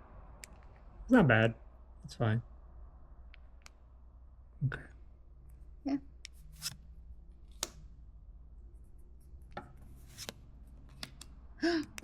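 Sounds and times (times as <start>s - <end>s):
cards clicking: 6.4s - 6.8s, 7.4s - 7.9s, 10.0s - 12.0s.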